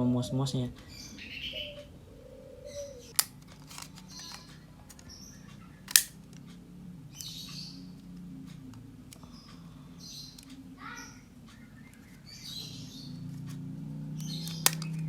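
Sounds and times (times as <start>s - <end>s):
birds chirping faintly: 0.0s - 15.0s
sharp plastic clicks: 3.1s - 6.6s, 14.2s - 15.0s.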